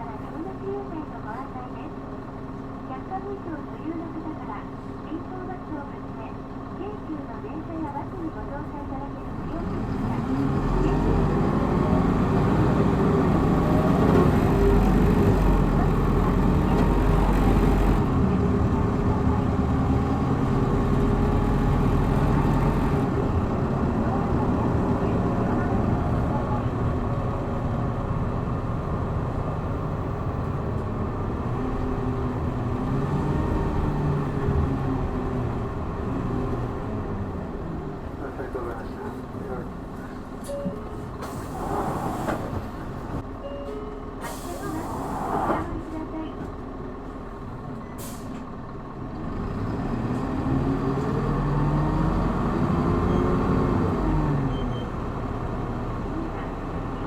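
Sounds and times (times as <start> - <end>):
bus diesel engine under load: 0.0 - 57.0
air hiss: 44.2 - 45.5.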